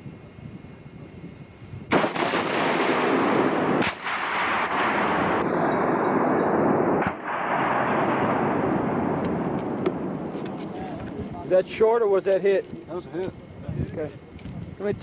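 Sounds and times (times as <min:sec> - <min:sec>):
rifle boom: 0:01.9 - 0:11.2.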